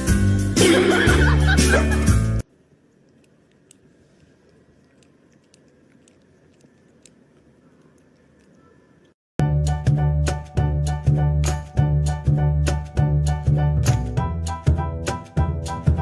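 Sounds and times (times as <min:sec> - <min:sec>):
faint scattered clicks: 0:03.0 - 0:09.2.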